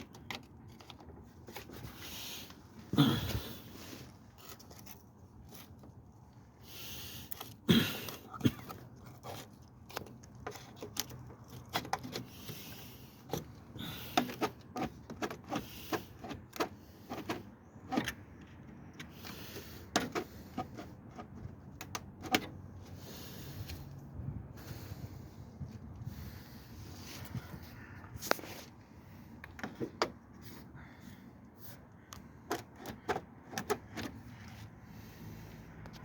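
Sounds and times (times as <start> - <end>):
clicks and knocks on a car: 13.2 - 22.6, 29.4 - 30.3, 32.2 - 34.3.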